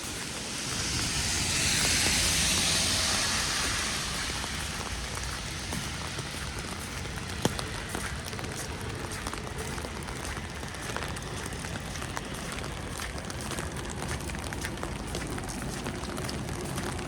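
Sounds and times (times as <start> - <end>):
wet snow pattering: 0.0 - 17.0.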